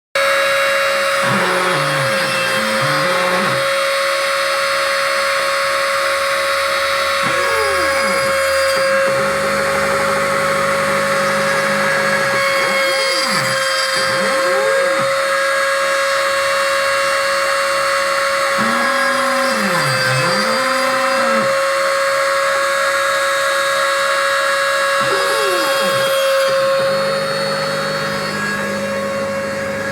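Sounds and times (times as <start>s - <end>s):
axis motors whining: 0.5s - 29.9s
spindle whine: 1.1s - 3.8s, 6.1s - 15.5s, 18.0s - 21.9s, 24.8s - 29.9s
milling cutting noise: 1.1s - 3.9s, 6.3s - 15.6s, 18.2s - 21.7s, 24.9s - 29.9s.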